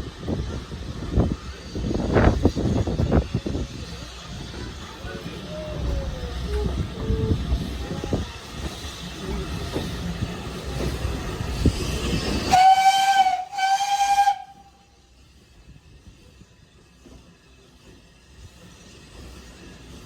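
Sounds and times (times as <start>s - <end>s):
steam locomotive rumbling: 0.0s - 20.0s
steam whistle blasts: 12.5s - 14.9s.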